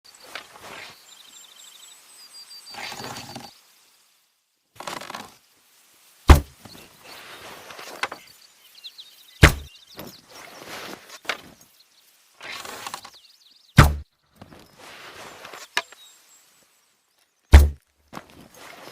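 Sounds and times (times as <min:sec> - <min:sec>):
rustling and scraping of handling: 0:02.7 - 0:03.9, 0:04.8 - 0:13.4, 0:14.3 - 0:18.9
bow shot thumps: 0:06.3 - 0:06.5, 0:09.4 - 0:09.7, 0:13.8 - 0:14.1, 0:17.5 - 0:17.8.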